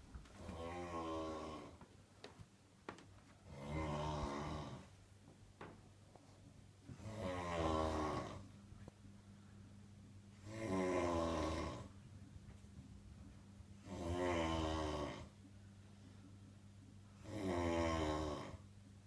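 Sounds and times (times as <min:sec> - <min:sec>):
faint low hum: 0:00.0 - 0:19.0
man snoring: 0:00.5 - 0:01.7, 0:03.5 - 0:04.8, 0:07.0 - 0:08.4, 0:10.4 - 0:11.9, 0:13.8 - 0:15.3, 0:17.2 - 0:18.6.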